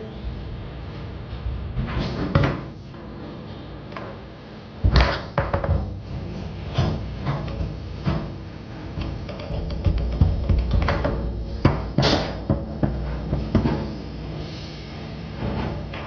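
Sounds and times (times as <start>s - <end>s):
foosball clacks and knocks: 4.9s - 6.0s, 9.0s - 13.9s.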